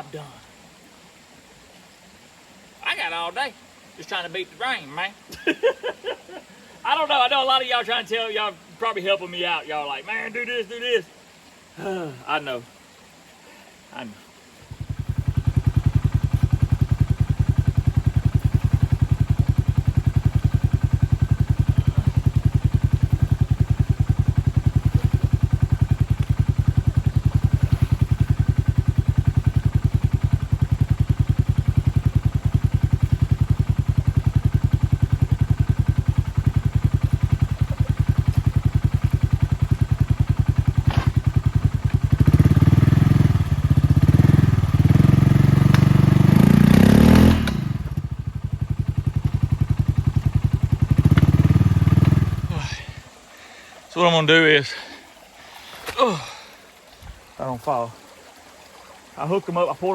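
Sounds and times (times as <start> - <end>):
engine idling: 14.7 - 53.7.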